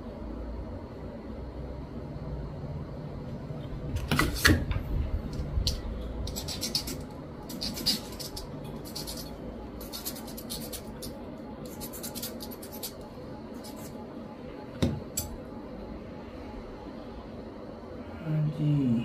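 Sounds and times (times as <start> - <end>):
tools scratching on circuit board: 6.2 - 14.0.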